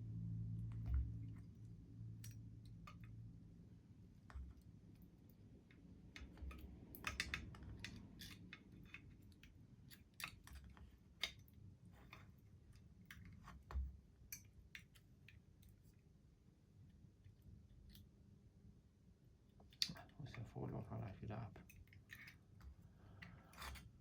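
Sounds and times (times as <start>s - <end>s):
small parts clicking and tapping: 0.6s - 3.4s, 4.2s - 15.9s.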